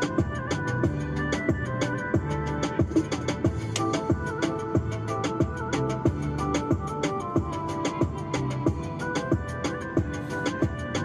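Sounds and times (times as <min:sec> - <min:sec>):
deep kick drum: 0:00.2 - 0:10.9
hi-hat ticks: 0:02.7 - 0:09.5.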